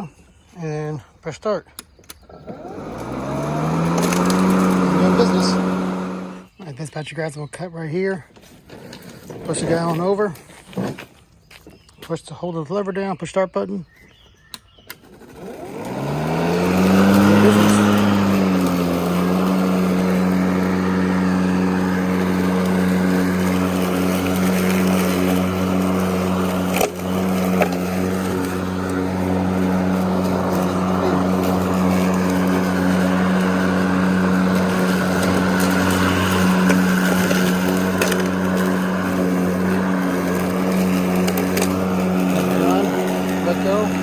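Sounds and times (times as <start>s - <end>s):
electric lawn mower humming: 1.8s - 6.5s, 14.9s - 44.0s.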